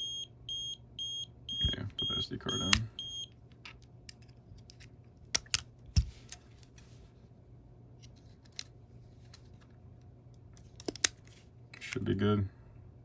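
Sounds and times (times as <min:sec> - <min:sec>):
plastic clicks of camera handling: 0:03.6 - 0:06.8, 0:08.0 - 0:09.7, 0:10.6 - 0:12.0.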